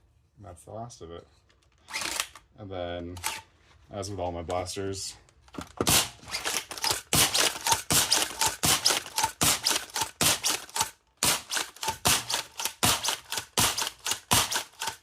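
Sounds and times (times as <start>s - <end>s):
dart blaster mechanical clacks: 5.6s - 15.0s.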